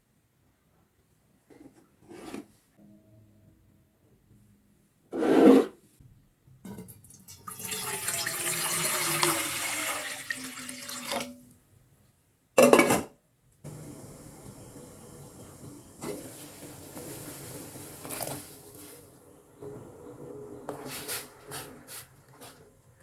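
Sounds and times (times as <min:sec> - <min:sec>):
water pouring: 0:06.8 - 0:11.5, 0:13.7 - 0:19.2
steady hiss: 0:13.7 - 0:22.7.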